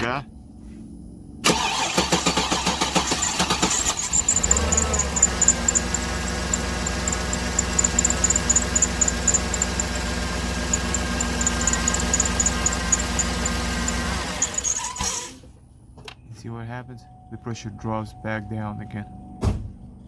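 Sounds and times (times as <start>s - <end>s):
car engine idling: 1.4s - 14.9s
light high ticking: 4.0s - 14.2s.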